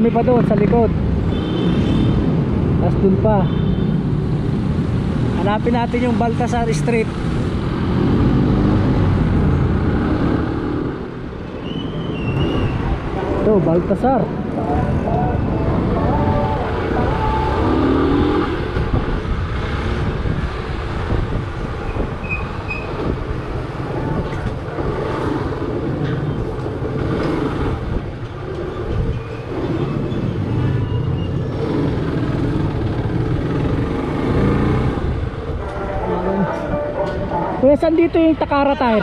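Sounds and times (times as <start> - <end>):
wind and road noise: 0.0 - 39.0.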